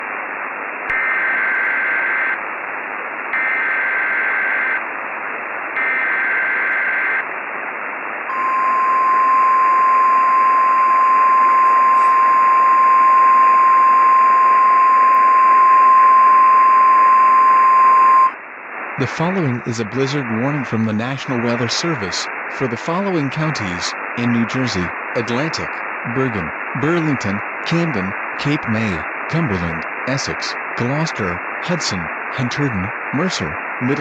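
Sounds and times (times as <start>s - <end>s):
radio static hiss: 0.0s - 34.0s
steady warning alarm tone: 8.3s - 18.4s
warbling data tones: 8.3s - 18.4s.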